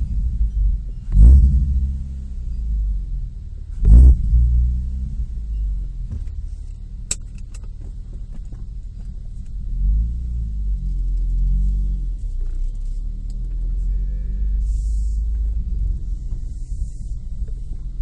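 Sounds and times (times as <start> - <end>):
car engine idling: 0.0 - 18.0
exhaust puff: 6.1 - 18.0.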